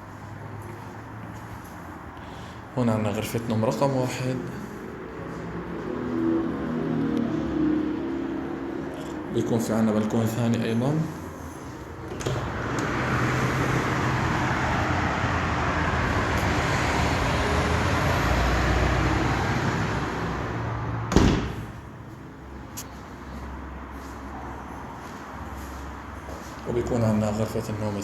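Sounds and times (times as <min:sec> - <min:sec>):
passing cars: 0:00.0 - 0:28.0.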